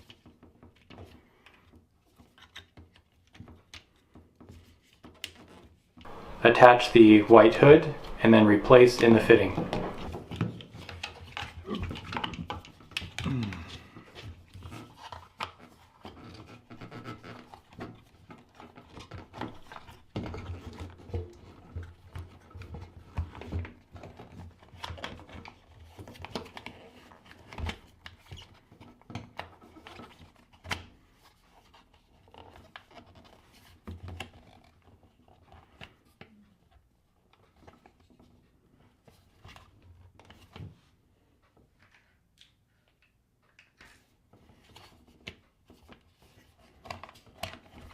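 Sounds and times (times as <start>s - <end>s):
plastic parts clicking and scraping: 0.0s - 6.4s.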